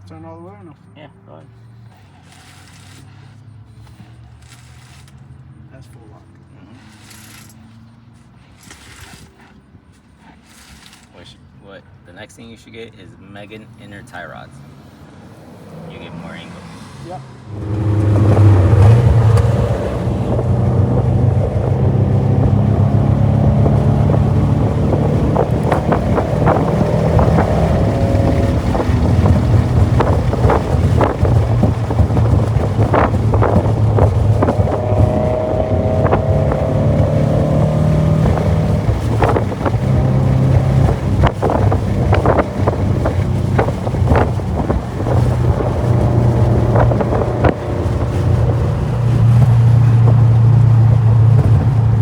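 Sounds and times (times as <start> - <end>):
car engine running: 17.4 - 52.0
wind buffeting microphone: 17.4 - 52.0.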